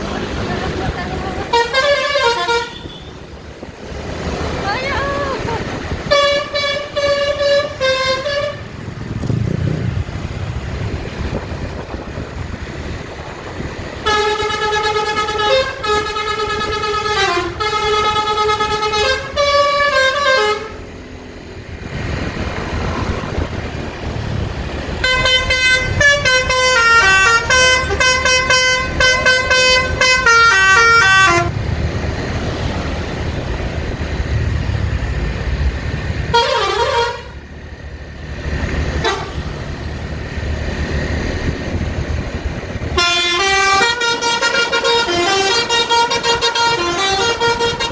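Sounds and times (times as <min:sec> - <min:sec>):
engine and traffic rumble: 0:00.0 - 0:47.9
multi-tone bus horn melody: 0:00.5 - 0:03.4, 0:04.7 - 0:08.9, 0:13.8 - 0:21.0, 0:25.0 - 0:31.6, 0:36.2 - 0:37.6, 0:38.9 - 0:39.7, 0:42.8 - 0:47.9.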